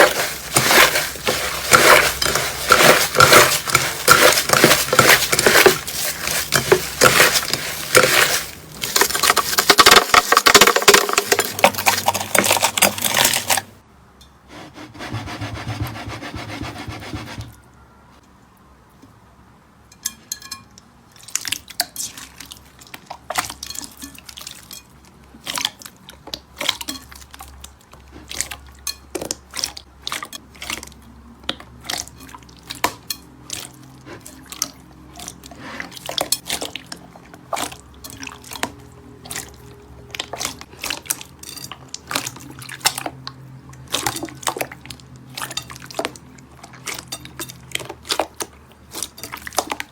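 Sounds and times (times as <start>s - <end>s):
slime squishing and crackling: 0.0s - 13.8s.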